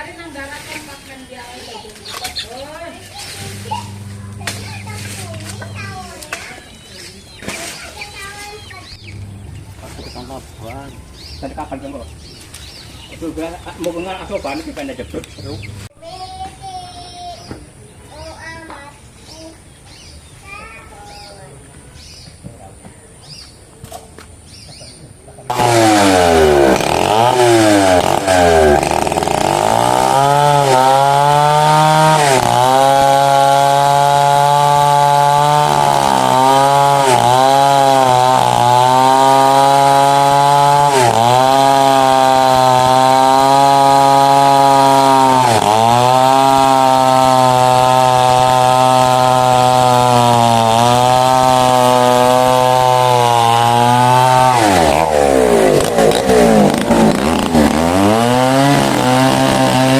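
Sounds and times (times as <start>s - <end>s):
chainsaw revving and cutting wood: 1.7s - 6.7s, 7.5s - 10.4s, 13.6s - 15.9s, 25.5s - 59.9s.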